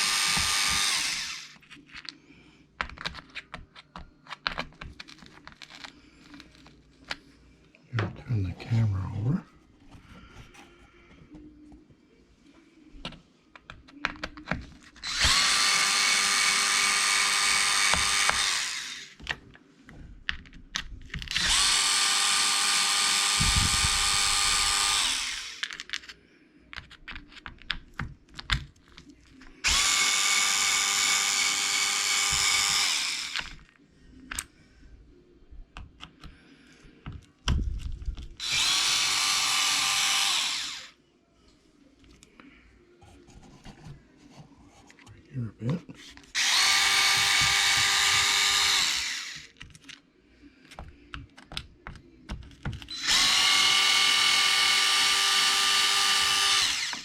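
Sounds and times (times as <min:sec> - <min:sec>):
electric screwdriver motor whine: 0:00.0 - 0:01.6, 0:15.0 - 0:19.2, 0:21.3 - 0:25.7, 0:29.6 - 0:33.6, 0:38.4 - 0:40.9, 0:46.4 - 0:49.5, 0:52.9 - 0:57.0.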